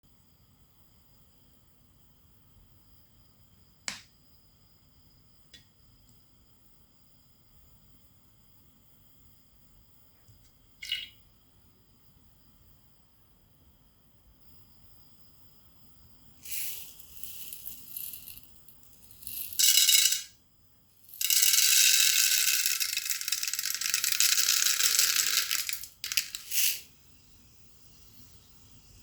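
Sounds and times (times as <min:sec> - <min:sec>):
rattling: 0:21.1 - 0:26.8.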